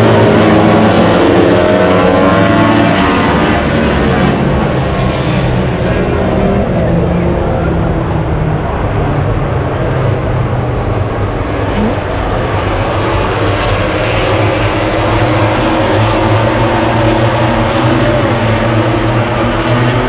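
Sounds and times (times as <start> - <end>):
steady engine drone: 0.0 - 20.0.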